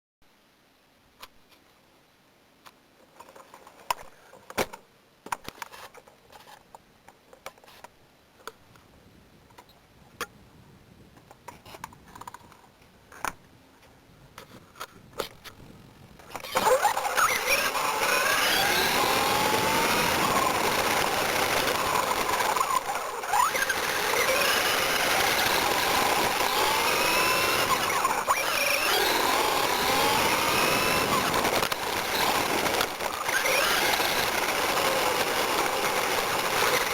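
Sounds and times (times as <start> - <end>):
electric motor and gears whining: 15.3 - 36.9.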